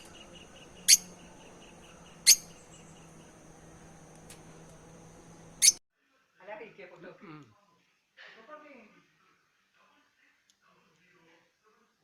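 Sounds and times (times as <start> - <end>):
lovebirds chirping: 0.0 - 5.8.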